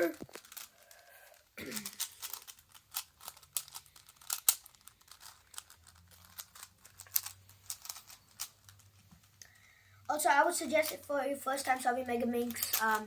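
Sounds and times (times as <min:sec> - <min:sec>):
puzzle cube clicking: 0:01.8 - 0:08.9, 0:12.4 - 0:13.0.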